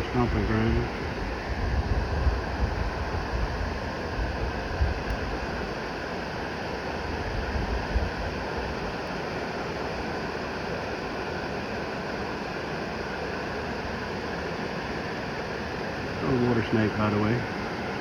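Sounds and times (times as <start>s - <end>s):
wind rumble on microphone: 0.0s - 5.9s, 6.9s - 9.0s.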